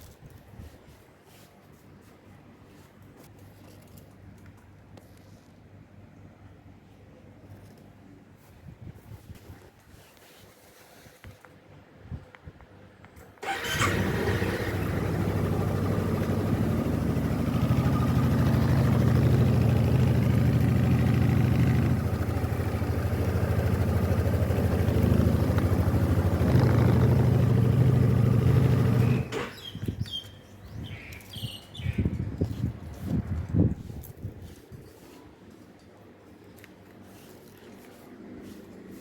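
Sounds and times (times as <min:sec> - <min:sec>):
scooter engine idling: 0:13.4 - 0:29.6.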